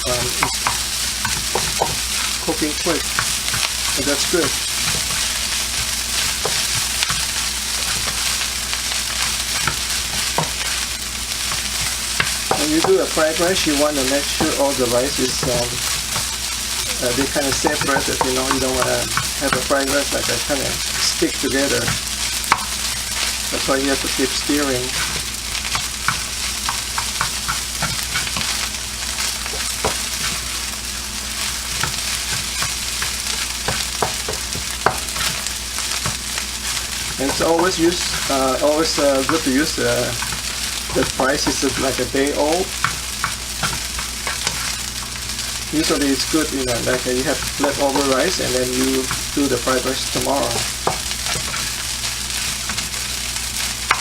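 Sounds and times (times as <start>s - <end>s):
rice sizzling in a pan: 0.0s - 54.0s
utensil clicking against pan: 11.4s - 28.7s.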